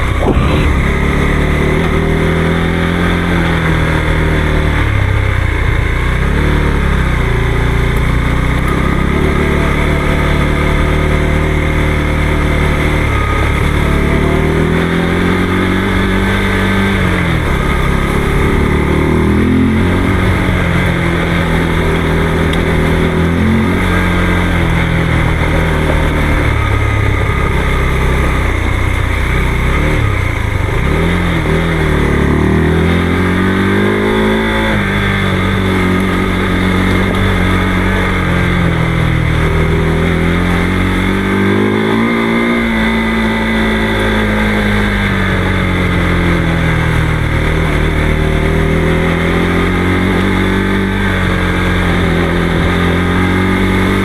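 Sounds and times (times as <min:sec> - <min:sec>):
motorcycle engine running: 0:00.0 - 0:54.0
wind and road noise: 0:00.0 - 0:54.0.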